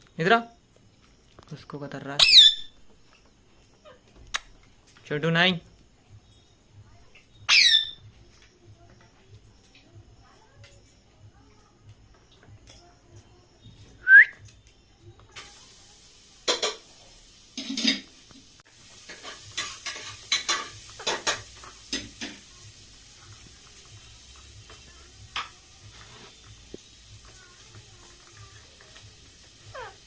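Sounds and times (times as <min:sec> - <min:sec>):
parrot whistling: 0:02.2 - 0:02.8, 0:07.5 - 0:08.0, 0:14.0 - 0:14.4, 0:29.7 - 0:30.0
faint hiss: 0:13.3 - 0:30.0.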